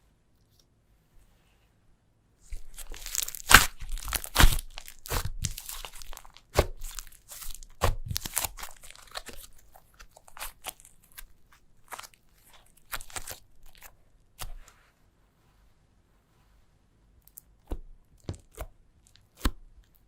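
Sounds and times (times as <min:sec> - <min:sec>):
slime crackling and popping: 0:02.6 - 0:14.6.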